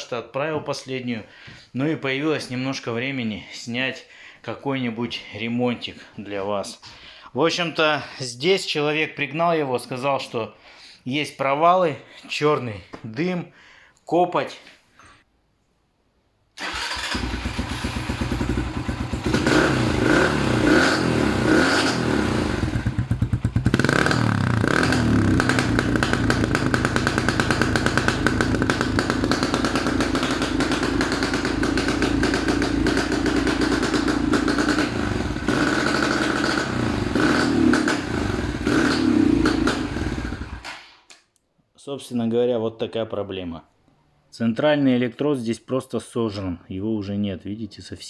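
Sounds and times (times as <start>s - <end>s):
motorcycle engine running: 17.1s - 40.6s.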